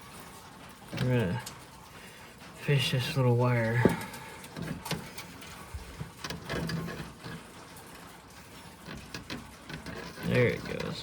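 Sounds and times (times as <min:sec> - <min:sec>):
wire scraping against metal: 0:02.8 - 0:11.0.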